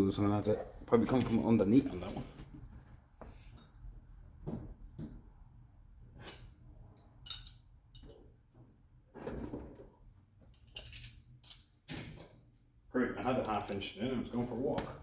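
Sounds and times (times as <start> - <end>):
hand tools clinking: 7.2 - 8.3, 10.5 - 12.3, 13.2 - 14.0.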